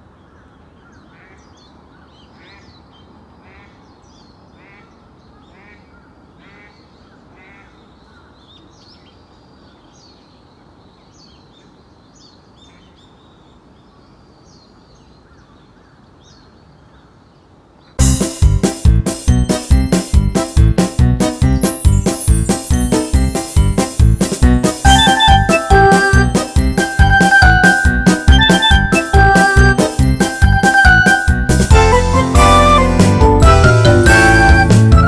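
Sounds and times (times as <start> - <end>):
small birds chirping: 0.0 - 20.6
music: 18.0 - 35.0.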